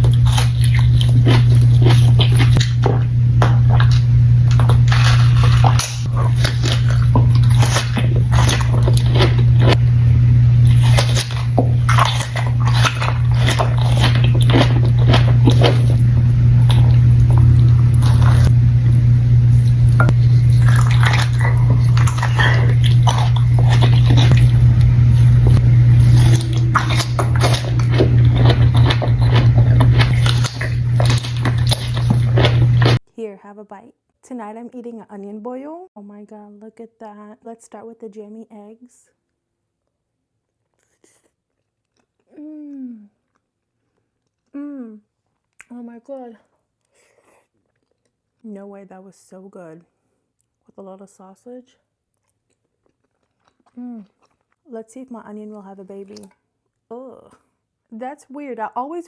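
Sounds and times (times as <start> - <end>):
steady low hum: 0.0 - 33.0
wet chewing and biting: 0.0 - 33.0, 40.6 - 42.4, 46.7 - 48.4, 52.1 - 54.7.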